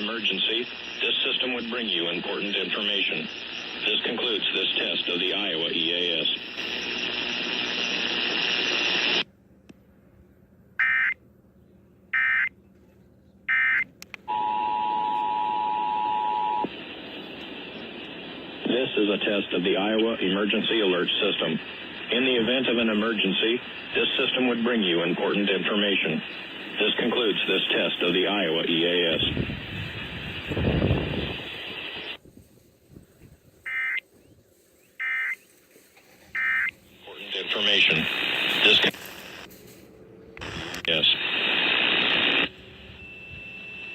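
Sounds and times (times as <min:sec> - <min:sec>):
loud static hiss: 0:00.0 - 0:09.3, 0:14.1 - 0:43.9
two-tone attention signal: 0:13.5 - 0:16.6.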